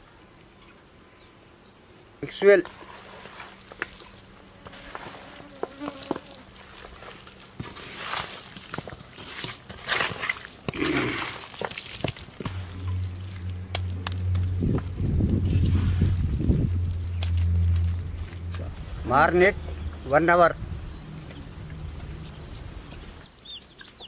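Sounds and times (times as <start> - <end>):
wet squelching of food mixing: 2.7 - 19.0
fly buzzing: 3.6 - 6.9.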